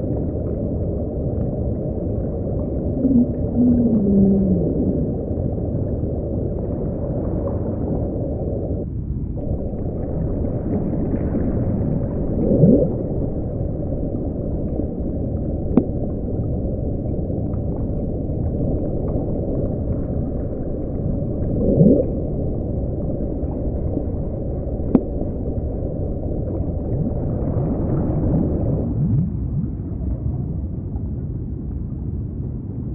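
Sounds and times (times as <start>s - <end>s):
deep underwater rushing: 0.0s - 32.6s
rising whale calls: 2.7s - 5.8s, 12.3s - 13.2s.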